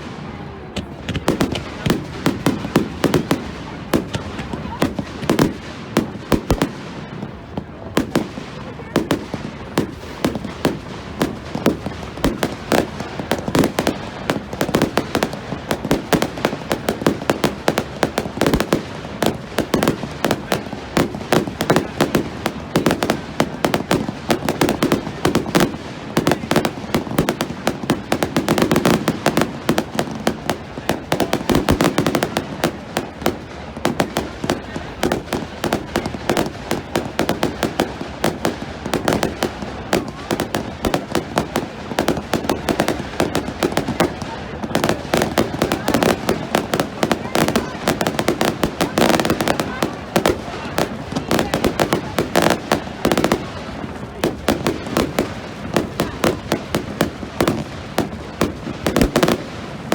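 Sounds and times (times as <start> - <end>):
fireworks cracking and popping: 0.0 - 59.9
rumble of fireworks bangs: 0.0 - 59.9.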